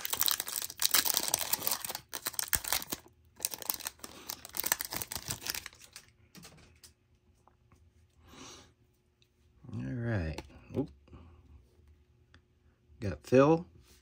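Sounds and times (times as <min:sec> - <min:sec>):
foil wrapper tearing and crinkling: 0:00.0 - 0:06.1.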